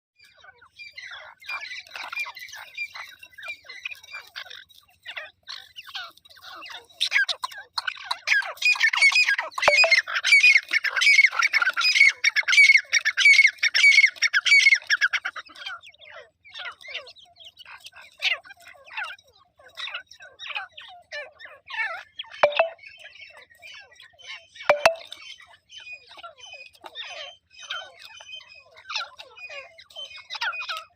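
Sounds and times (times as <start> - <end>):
partridge calling: 7.8 - 10.0, 22.4 - 22.8, 24.7 - 25.1.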